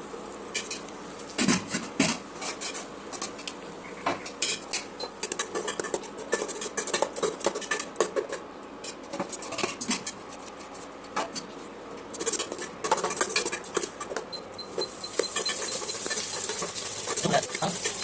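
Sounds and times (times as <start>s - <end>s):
utensils clinking against dishes: 4.3s - 10.2s, 12.2s - 18.0s.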